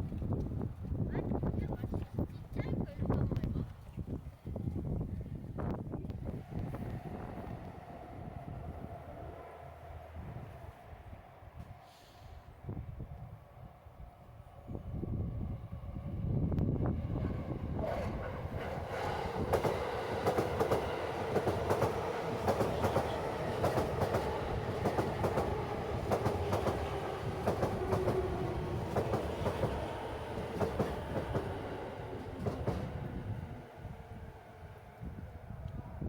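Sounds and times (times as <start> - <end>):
train rumbling hum: 5.6 - 36.0
train wheels clacking over rail joints: 17.8 - 31.6, 32.2 - 33.0.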